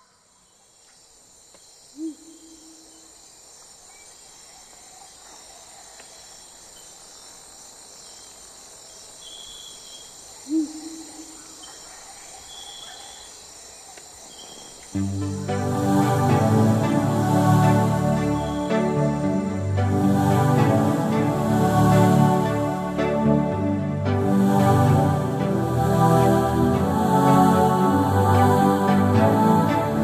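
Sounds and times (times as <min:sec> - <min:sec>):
crickets and insects chirring: 0:00.0 - 0:30.0
low hooting call: 0:02.0 - 0:03.1, 0:10.4 - 0:13.4, 0:15.0 - 0:30.0
faint high whistled notes: 0:17.6 - 0:19.4.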